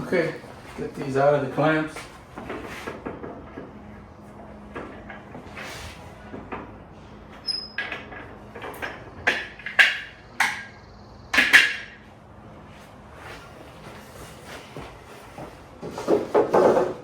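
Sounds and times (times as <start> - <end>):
clamps knocking and clanking: 7.5 - 10.7, 11.4 - 12.0.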